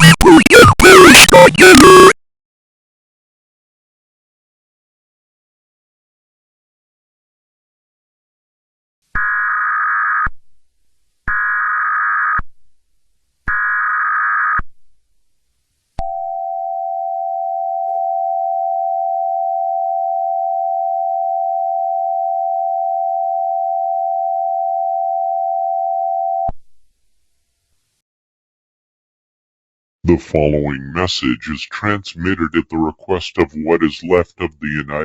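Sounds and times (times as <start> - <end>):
steady attention tone: 30.1 - 35.0.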